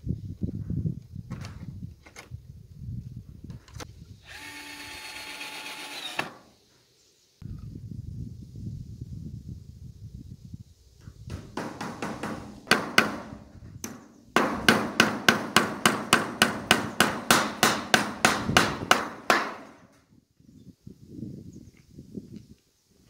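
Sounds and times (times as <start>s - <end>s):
hammer striking fence: 11.3s - 19.9s.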